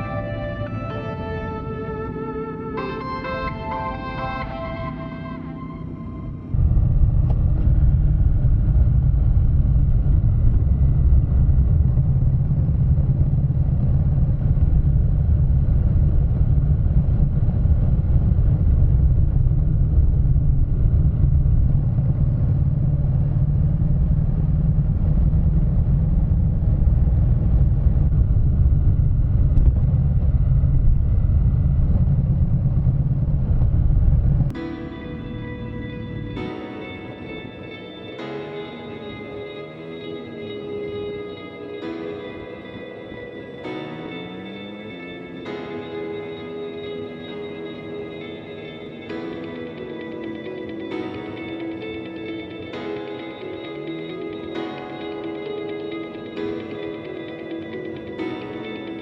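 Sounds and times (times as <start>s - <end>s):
road noise: 0.0s - 59.0s
motorcycle engine rumbling: 5.4s - 38.2s
wind noise: 6.5s - 36.4s.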